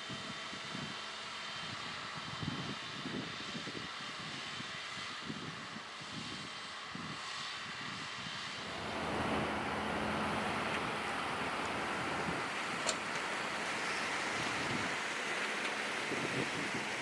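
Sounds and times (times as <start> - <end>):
wind buffeting microphone: 1.6 - 17.0
broad rushing noise: 8.6 - 17.0
tractor engine running: 8.6 - 17.0.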